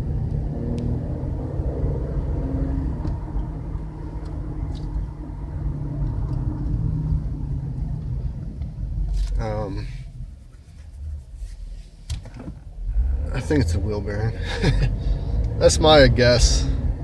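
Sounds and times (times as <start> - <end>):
road rumble inside car: 0.0 - 17.0.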